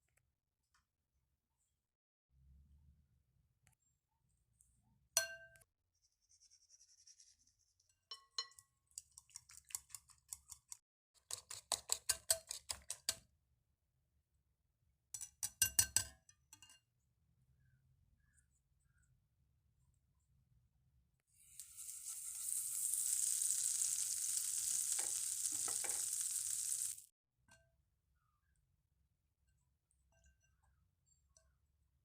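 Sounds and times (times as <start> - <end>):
utensil clinking against a bowl: 8.1 - 13.2, 15.2 - 16.8.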